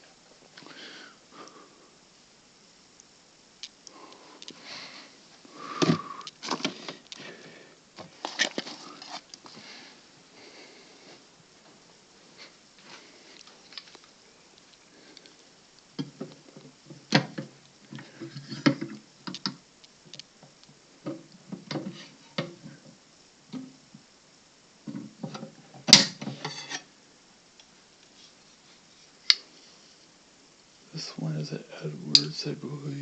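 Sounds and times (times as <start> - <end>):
knocks and clicks of objects handled: 5.8 - 7.2, 16.0 - 22.7.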